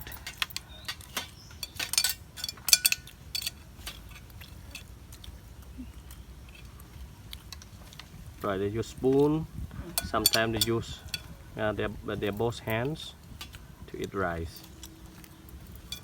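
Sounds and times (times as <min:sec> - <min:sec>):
spoons clinking against plates: 0:00.0 - 0:04.9, 0:09.9 - 0:11.6, 0:14.5 - 0:16.0.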